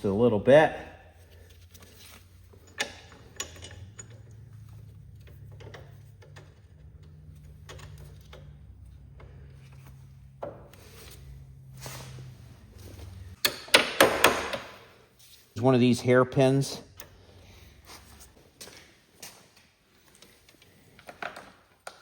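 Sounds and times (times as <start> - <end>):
metal tools clicking and rubbing: 1.8 - 8.5.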